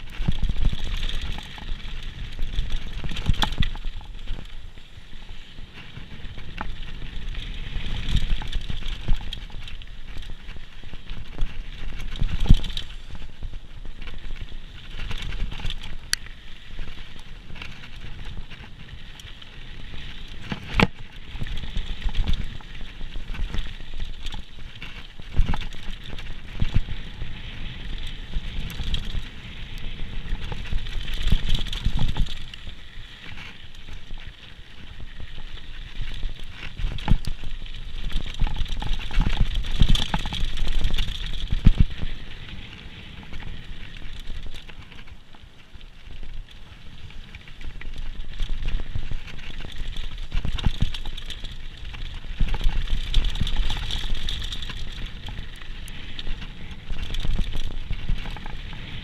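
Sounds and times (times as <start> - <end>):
bike rattling and crunching: 0.0 - 59.0.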